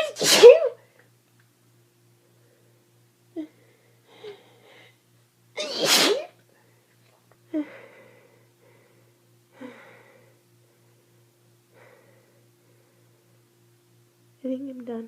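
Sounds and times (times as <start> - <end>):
person sneezing: 0.0 - 0.8, 5.6 - 6.4.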